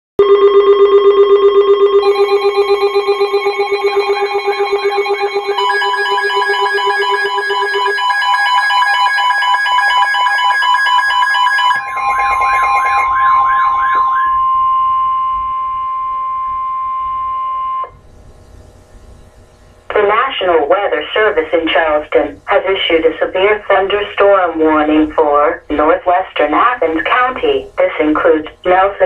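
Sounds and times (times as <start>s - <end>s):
electronic alert tones: 0.2s - 17.9s
steady high tone: 0.2s - 17.9s.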